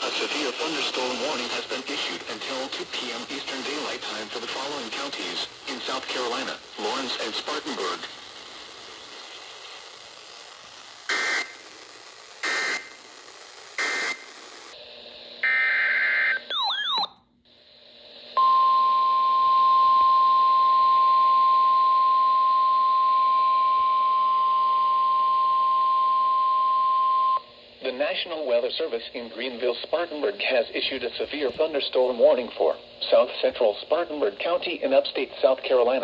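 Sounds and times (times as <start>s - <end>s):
steady alarm tone: 15.4s - 17.1s.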